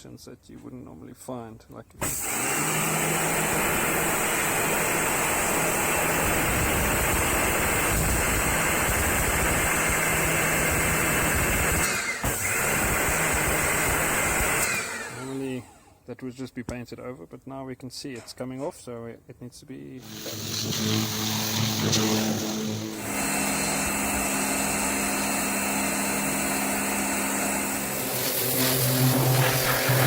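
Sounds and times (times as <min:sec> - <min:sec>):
pressure washer water jet hissing: 0:02.1 - 0:15.4, 0:20.0 - 0:30.0
pressure washer machine hum: 0:02.1 - 0:15.5, 0:20.0 - 0:30.0.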